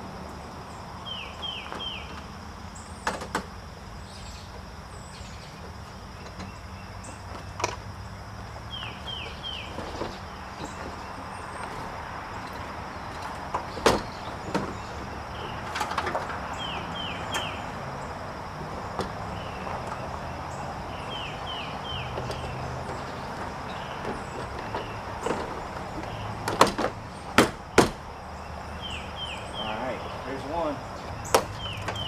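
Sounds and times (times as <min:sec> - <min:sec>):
knocks and clicks of car parts: 0:03.0 - 0:03.6, 0:05.6 - 0:08.0, 0:08.6 - 0:17.6, 0:18.5 - 0:20.2, 0:21.0 - 0:28.1, 0:31.0 - 0:32.0
bird chirping falling notes: 0:04.1 - 0:32.0.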